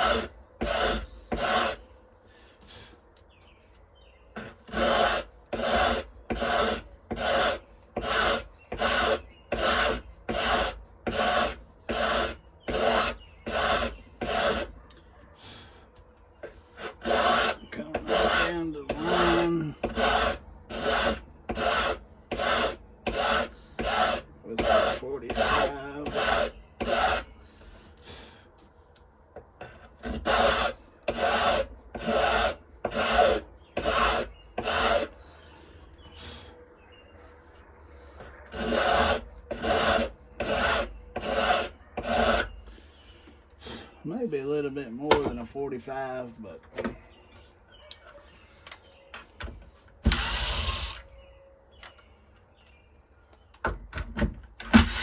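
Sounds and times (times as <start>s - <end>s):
hand file rasping: 0.0s - 2.0s, 4.4s - 14.9s, 16.4s - 28.8s, 29.4s - 36.6s, 38.1s - 47.2s.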